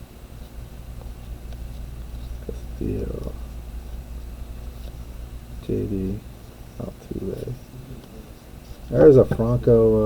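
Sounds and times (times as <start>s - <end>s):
low room hum: 0.0s - 10.0s
man talking: 2.8s - 3.4s, 5.6s - 6.2s, 6.8s - 7.6s, 8.9s - 10.0s.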